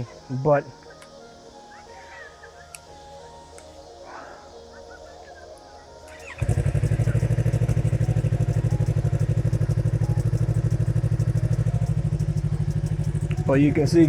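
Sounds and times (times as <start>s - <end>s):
motorcycle engine starting and idling: 6.1s - 14.0s.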